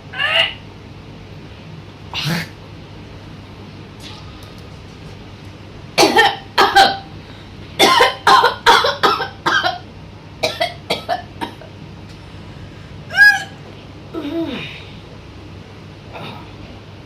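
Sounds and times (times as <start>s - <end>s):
person coughing: 6.0s - 7.1s, 7.8s - 9.8s, 10.4s - 11.7s.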